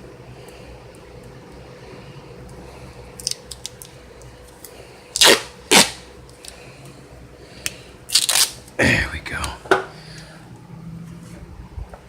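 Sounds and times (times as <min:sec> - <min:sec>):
tape ripping off roll: 0:05.2 - 0:06.1, 0:08.1 - 0:08.6.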